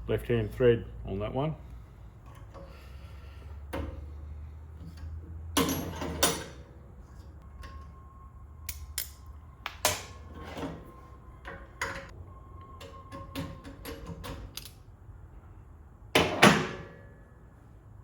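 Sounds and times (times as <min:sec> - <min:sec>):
metallic clicks and knocks of tools: 0:08.6 - 0:10.0, 0:14.5 - 0:14.8.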